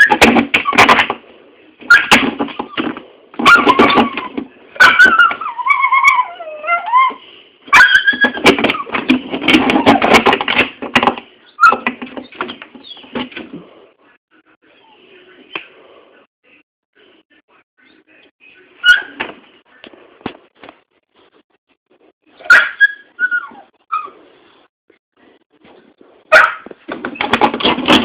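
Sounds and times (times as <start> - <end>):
dog whining: 3.4 - 8.9, 22.4 - 24.2.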